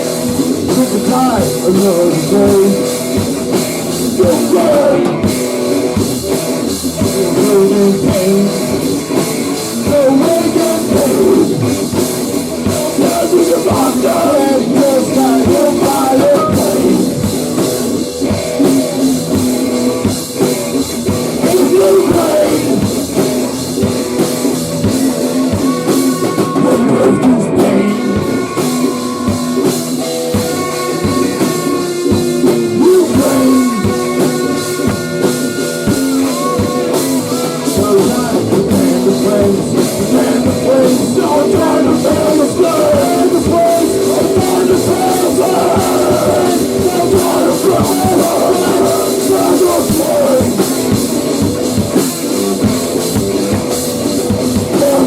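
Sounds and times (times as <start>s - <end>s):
person singing: 0.0s - 3.0s, 4.0s - 5.4s, 6.8s - 9.0s, 9.6s - 11.9s, 12.5s - 17.4s, 21.3s - 23.0s, 24.9s - 51.4s, 54.1s - 55.0s
drum kit: 0.0s - 55.0s
guitar: 0.0s - 55.0s
rock band playing: 0.0s - 55.0s.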